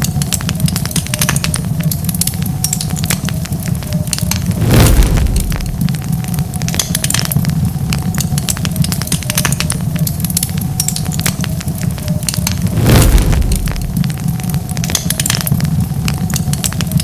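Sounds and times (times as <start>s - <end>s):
wood fire crackling and popping: 0.0s - 17.0s
steady low rumble: 4.3s - 6.5s, 12.4s - 14.6s.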